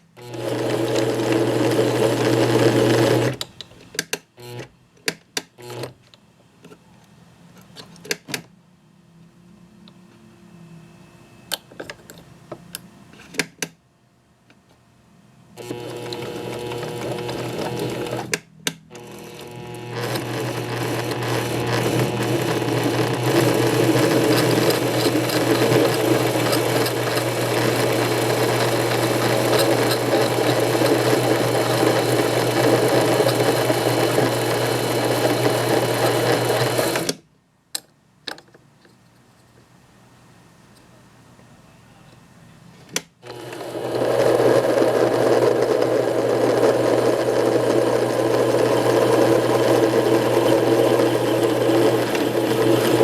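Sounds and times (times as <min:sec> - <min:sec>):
metal lathe running: 0:00.3 - 0:03.3, 0:15.6 - 0:18.3, 0:19.0 - 0:37.1, 0:43.3 - 0:53.0.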